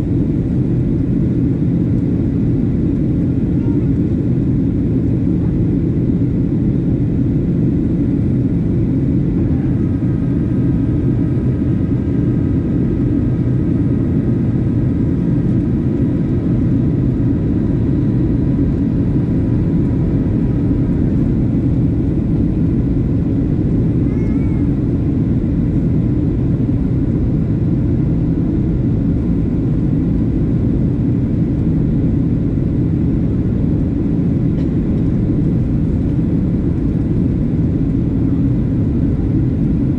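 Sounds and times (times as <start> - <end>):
airplane cabin engine rumble: 0.0 - 39.9.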